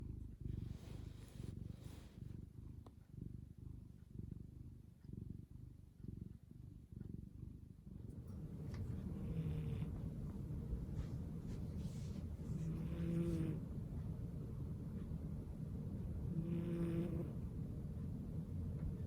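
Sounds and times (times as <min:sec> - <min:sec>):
cat snoring softly: 0:00.0 - 0:04.3, 0:05.0 - 0:19.0.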